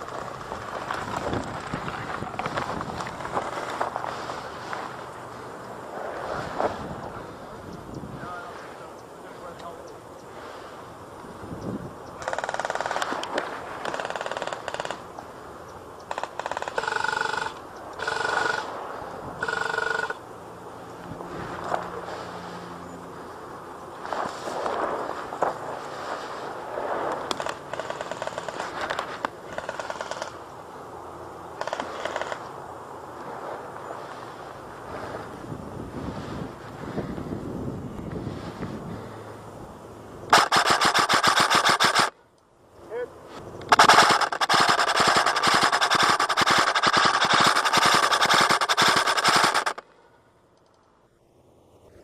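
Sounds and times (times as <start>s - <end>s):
airsoft gun rapid fire: 12.2s - 15.0s, 16.1s - 18.7s, 19.4s - 20.2s, 27.3s - 30.4s, 40.3s - 42.2s, 43.7s - 49.8s
airsoft gun full-auto firing: 40.3s - 42.2s, 43.7s - 49.8s.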